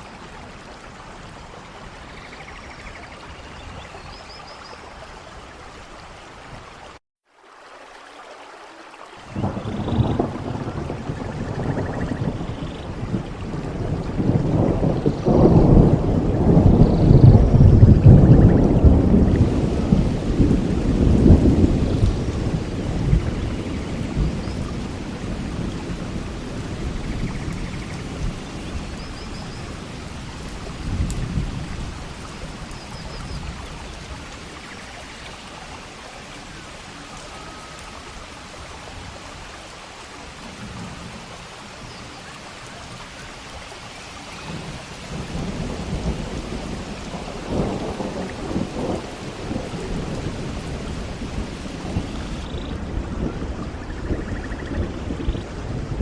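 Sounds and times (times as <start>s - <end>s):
steady rain: 0.0s - 56.0s
rolling thunder: 9.4s - 35.0s, 44.4s - 56.0s.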